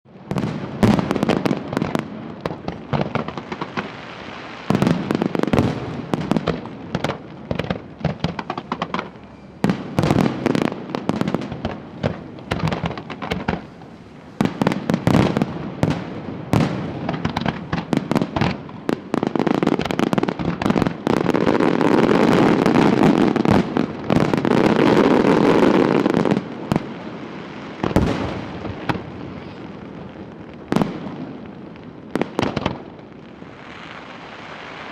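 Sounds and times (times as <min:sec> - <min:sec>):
fireworks bangs and crackling: 0:00.1 - 0:34.9.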